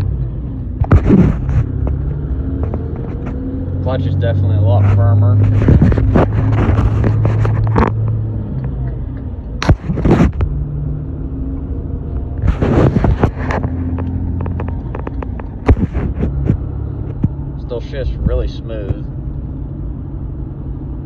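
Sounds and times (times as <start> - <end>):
diesel truck engine running: 0.0 - 21.0
knocks and rattles: 12.4 - 17.4.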